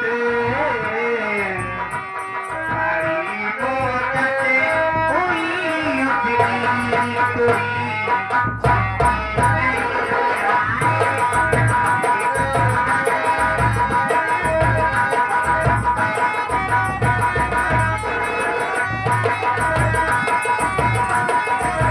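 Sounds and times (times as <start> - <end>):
steady drum beat: 6.2 - 21.9
bending melody: 9.2 - 21.9.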